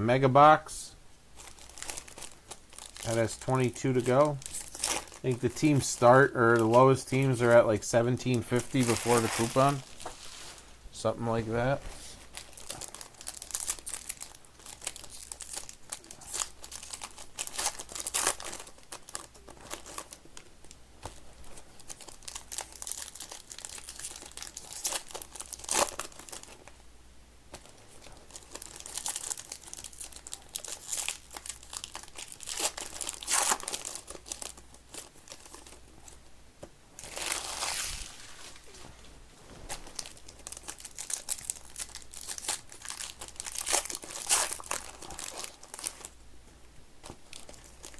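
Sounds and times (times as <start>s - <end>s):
wrappers torn and crinkled: 1.4s - 3.4s, 4.0s - 5.5s, 8.6s - 10.3s, 12.3s - 20.2s, 21.8s - 26.7s, 28.0s - 35.8s, 37.0s - 39.0s, 39.6s - 46.1s, 47.0s - 47.9s.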